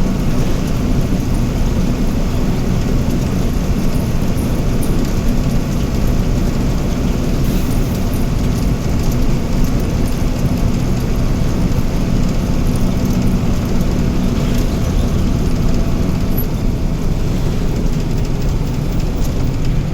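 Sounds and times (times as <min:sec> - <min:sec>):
heavy machine engine running: 0:00.0 - 0:19.9.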